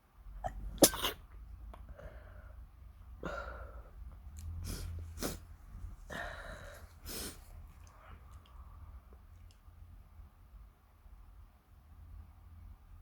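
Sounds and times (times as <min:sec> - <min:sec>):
person sniffing and breathing sharply: 0:03.3 - 0:08.2.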